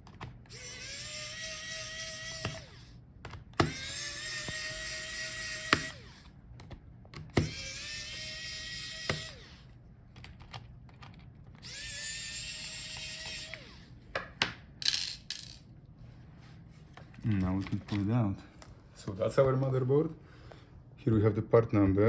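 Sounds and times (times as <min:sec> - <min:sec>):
electric screwdriver whirring: 0:00.2 - 0:06.4, 0:07.2 - 0:09.7, 0:11.6 - 0:14.0.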